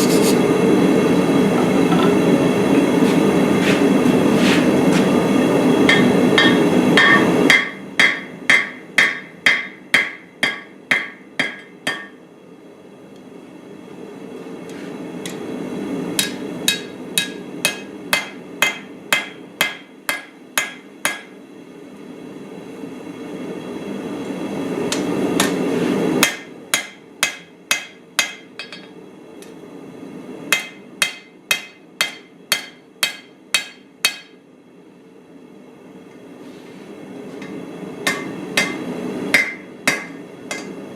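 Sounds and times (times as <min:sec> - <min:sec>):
hammer striking anvil: 0:05.9 - 0:12.2, 0:16.2 - 0:21.4, 0:26.2 - 0:28.9, 0:30.5 - 0:34.4, 0:38.0 - 0:40.8.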